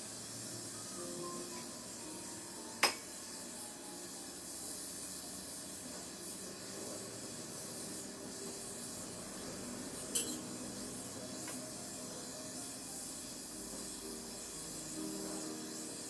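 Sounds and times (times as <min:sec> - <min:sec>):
gas torch hissing: 0:00.0 - 0:16.0.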